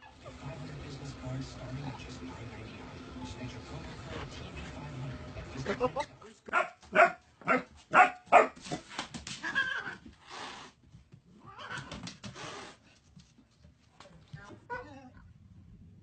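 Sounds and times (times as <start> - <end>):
dog barking: 6.5 - 8.7.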